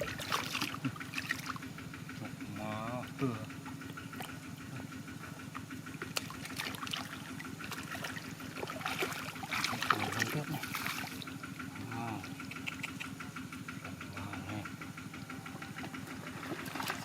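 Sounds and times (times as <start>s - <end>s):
shallow water splashing: 0.0s - 2.1s, 3.0s - 11.6s, 16.0s - 17.0s
small engine humming: 0.0s - 17.0s.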